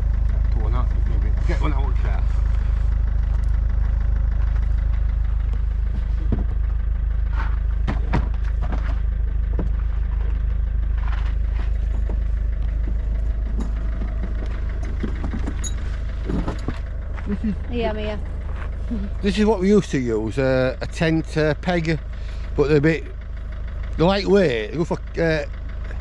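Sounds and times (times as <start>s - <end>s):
low rumble: 0.0s - 23.1s
short knocks and clatters: 13.5s - 17.3s.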